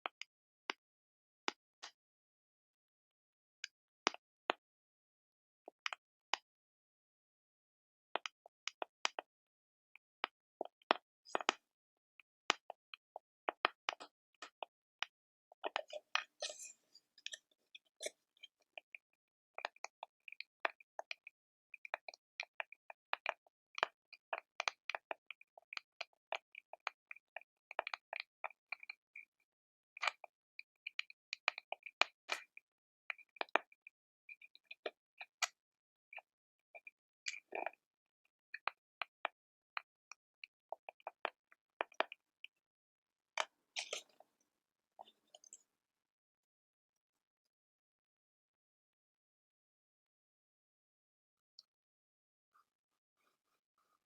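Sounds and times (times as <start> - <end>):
crackling clicks and pops: 3.6 - 4.6, 5.8 - 6.4, 8.2 - 9.3, 10.2 - 11.6, 12.5 - 19.0, 19.6 - 29.4, 30.0 - 37.8, 38.5 - 42.6, 43.4 - 44.3.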